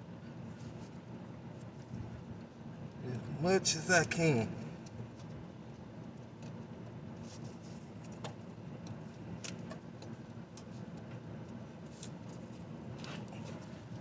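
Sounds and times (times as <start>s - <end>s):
low background rumble: 0.0s - 14.0s
light clicks and taps: 7.9s - 12.4s.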